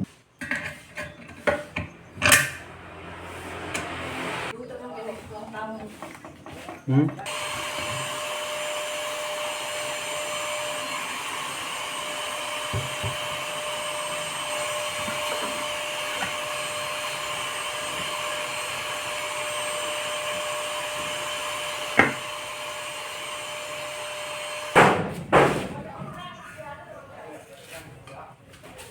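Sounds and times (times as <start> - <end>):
small electric motor whirring: 7.2 - 24.8.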